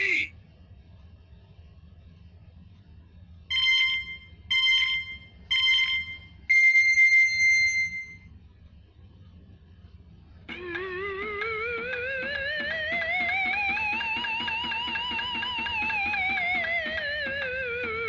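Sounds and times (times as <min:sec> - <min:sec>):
electronic countdown beeps: 0:03.5 - 0:08.3, 0:10.5 - 0:18.0.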